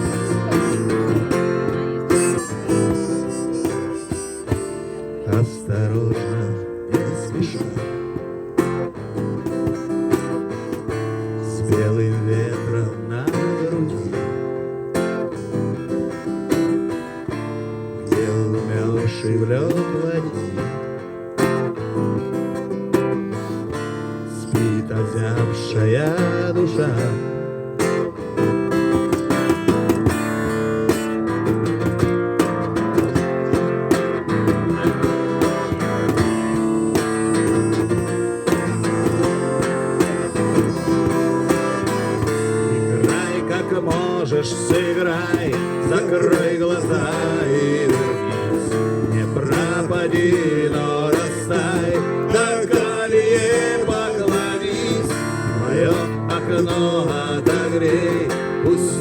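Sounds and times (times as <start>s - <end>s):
acoustic guitar strumming: 0.0s - 59.0s
wavering melodic lines: 35.0s - 43.0s.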